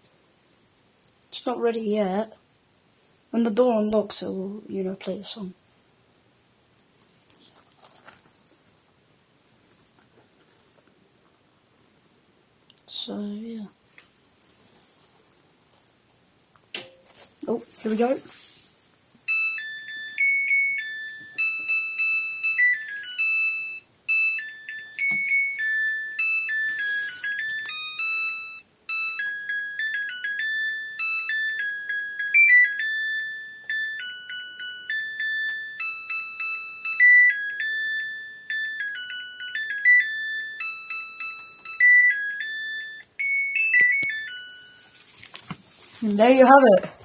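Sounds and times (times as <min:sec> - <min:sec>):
washing machine beeping melody: 0:19.3 - 0:45.0.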